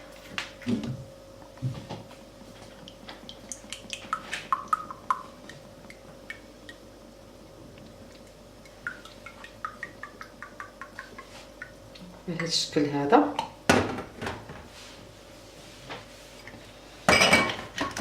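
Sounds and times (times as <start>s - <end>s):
faint steady hum: 0.0s - 18.0s
glassware clinking: 17.1s - 17.6s.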